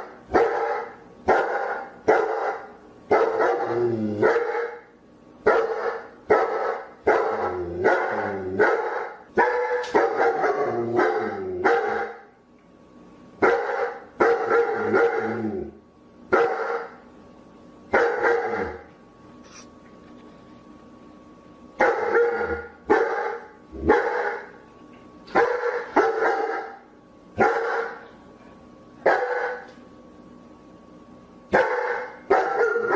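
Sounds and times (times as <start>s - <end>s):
dog barking: 0.3s - 4.9s, 5.5s - 12.3s, 13.4s - 15.4s, 16.3s - 17.0s, 17.9s - 18.8s, 21.8s - 24.5s, 25.3s - 26.8s, 27.4s - 28.0s, 29.0s - 29.7s, 31.5s - 32.9s.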